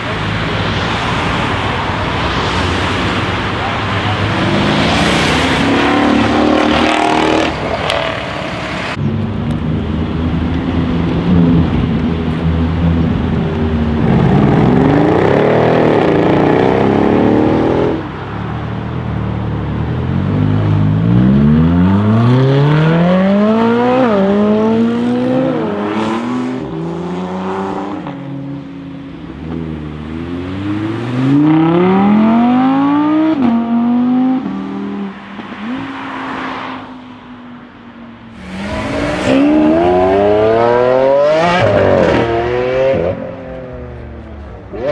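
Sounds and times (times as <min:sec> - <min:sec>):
car engine accelerating through gears: 0:38.3 - 0:43.3.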